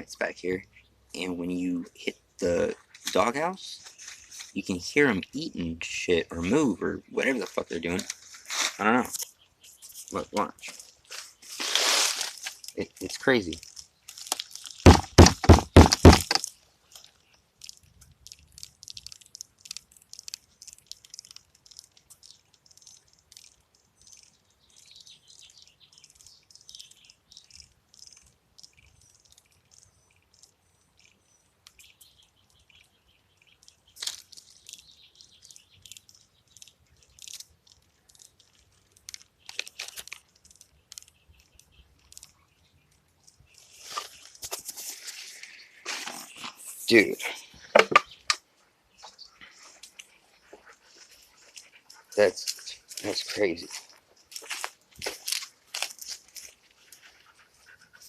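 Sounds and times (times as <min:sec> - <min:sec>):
termites crackling and ticking: 0:00.0 - 0:58.0
rapid knocking on wood: 0:14.8 - 0:16.4.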